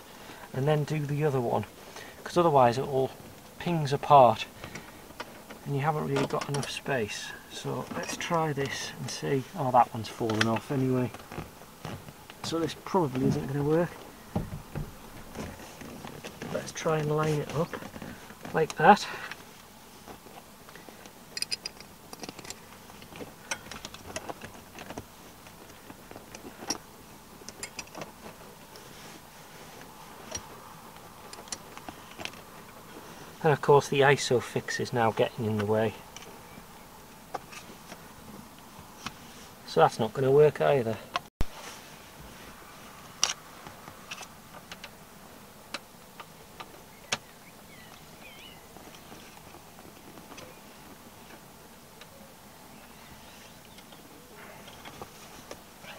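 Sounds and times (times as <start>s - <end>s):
light clicks and knocks: 4.6s - 6.8s
metal parts clicking and clinking: 21.3s - 24.0s, 27.4s - 28.1s.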